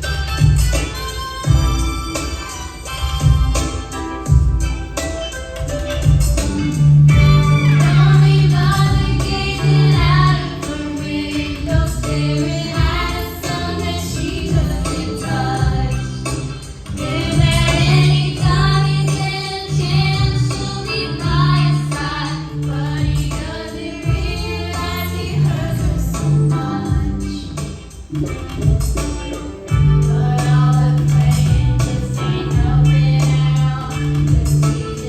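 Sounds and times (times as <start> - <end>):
band with bass and beat: 0.0 - 35.0
women singing pop song: 7.1 - 27.7, 29.7 - 35.0.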